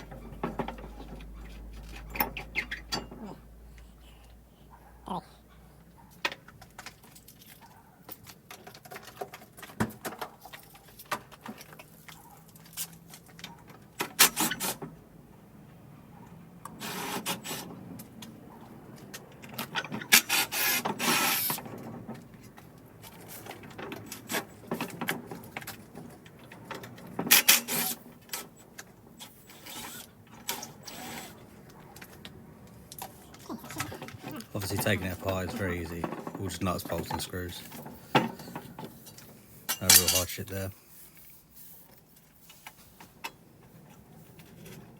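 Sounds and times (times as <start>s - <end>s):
hand tools clicking and ratcheting: 0.0s - 3.3s, 19.0s - 40.7s
metal clattering and rattling: 0.0s - 3.4s.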